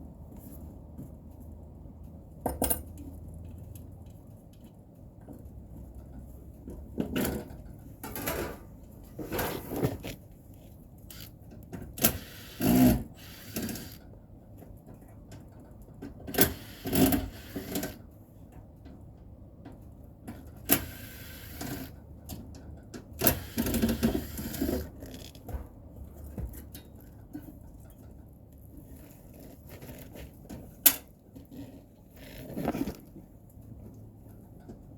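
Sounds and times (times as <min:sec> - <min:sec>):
tool and handling noise: 0:07.0 - 0:11.4, 0:23.2 - 0:34.8.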